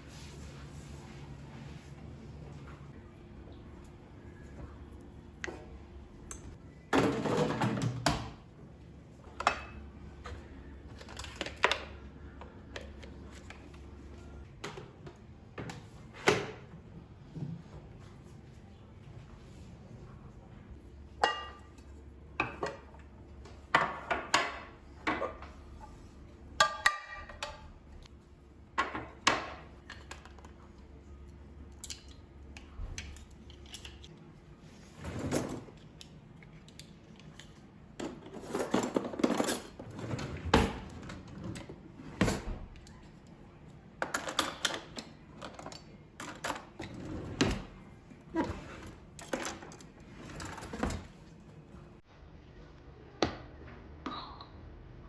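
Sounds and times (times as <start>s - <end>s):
dishes clinking and clattering: 21.2s - 21.8s, 38.0s - 42.6s.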